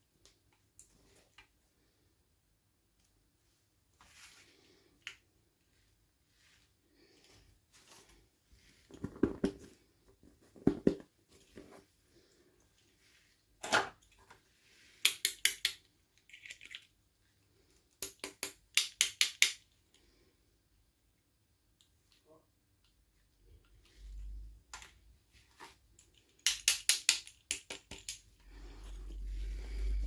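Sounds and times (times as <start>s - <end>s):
plastic toy parts clicking: 15.0s - 16.9s, 18.0s - 19.7s, 26.0s - 28.2s.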